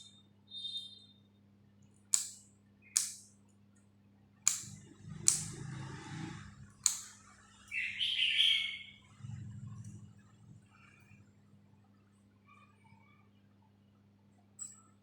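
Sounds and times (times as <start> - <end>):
low electrical hum: 0.0 - 15.0
sharp clicks of small objects: 2.1 - 3.3, 4.5 - 5.6, 6.8 - 7.2.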